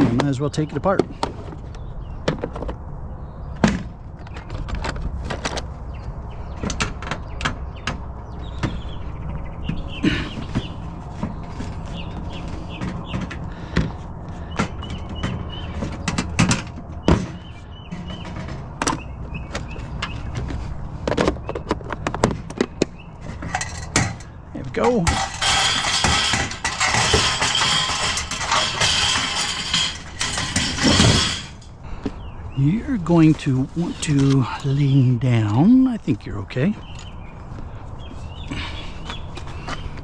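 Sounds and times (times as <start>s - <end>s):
hand tools knocking on metal: 23.4s - 31.7s.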